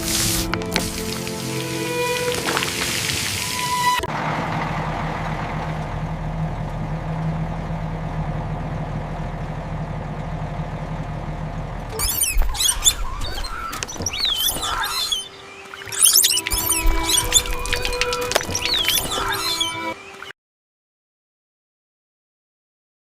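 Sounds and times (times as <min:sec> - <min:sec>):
high squeaky chirps: 0:00.0 - 0:04.1, 0:11.9 - 0:20.0
vehicle engine idling: 0:00.0 - 0:13.6.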